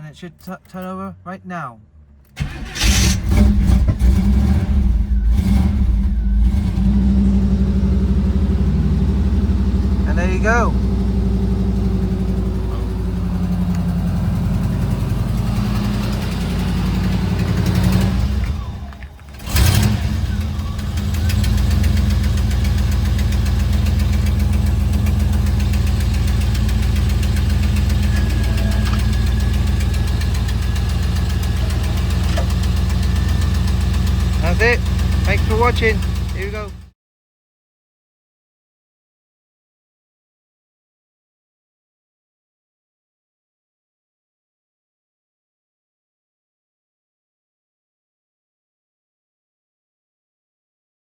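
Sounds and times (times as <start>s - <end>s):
car engine starting and idling: 0.0s - 36.9s
starter cranking: 2.2s - 4.4s, 15.6s - 36.8s
engine tapping tick: 11.9s - 36.9s.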